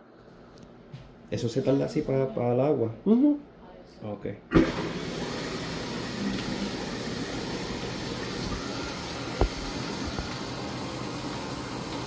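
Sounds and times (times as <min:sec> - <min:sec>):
water hissing through pipe: 0:04.6 - 0:12.0.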